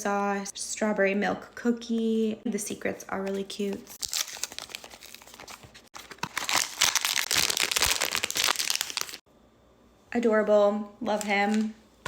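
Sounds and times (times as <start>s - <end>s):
packaging crinkling and ripping: 3.9s - 9.2s.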